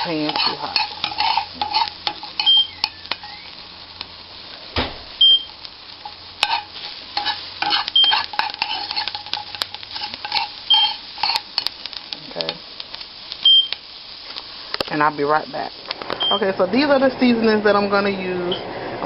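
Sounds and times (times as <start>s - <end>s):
utensil scraping and clinking pan: 0.0s - 3.4s, 6.0s - 11.7s
peppers sizzling in a frying pan: 0.0s - 19.0s
loud knock: 4.8s - 5.1s.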